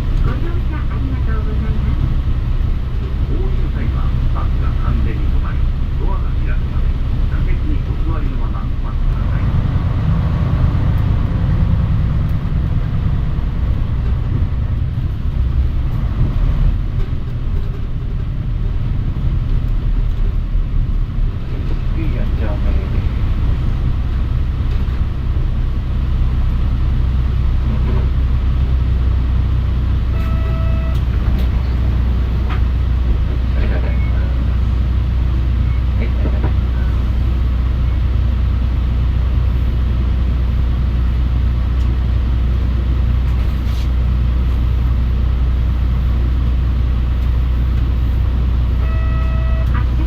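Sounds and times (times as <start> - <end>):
bus diesel engine droning: 0.0 - 50.0
short electronic beep: 30.1 - 31.1, 48.8 - 49.9.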